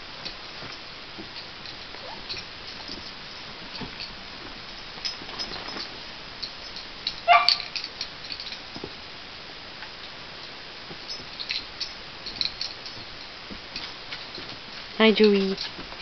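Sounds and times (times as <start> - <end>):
small dog yipping: 2.0 - 2.4, 7.3 - 7.7.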